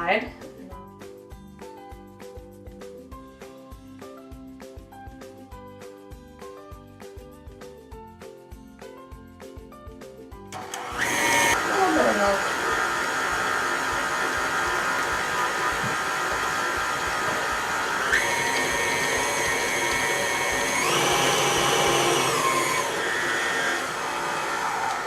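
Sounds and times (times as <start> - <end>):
electric stand mixer running: 10.6 - 25.0.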